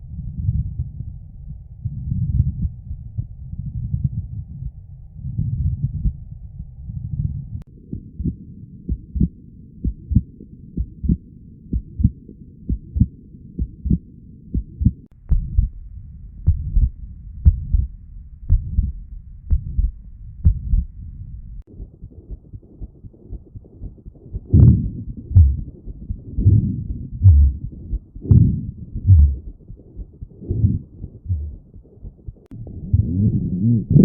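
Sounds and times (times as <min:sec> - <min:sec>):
heartbeats through stethoscope: 0:00.0 - 0:06.3, 0:07.0 - 0:21.0, 0:21.6 - 0:34.0
low rushing breath noise: 0:19.5 - 0:34.0.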